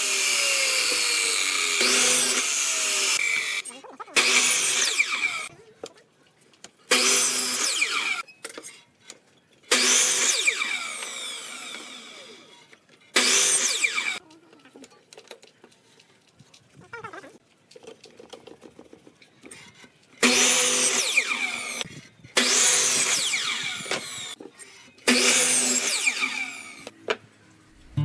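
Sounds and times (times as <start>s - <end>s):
power tool bursts winding down: 0.0s - 3.6s, 4.2s - 5.5s, 6.9s - 8.2s, 9.7s - 12.6s, 13.2s - 14.2s, 20.2s - 21.8s, 22.4s - 24.4s, 25.1s - 26.9s.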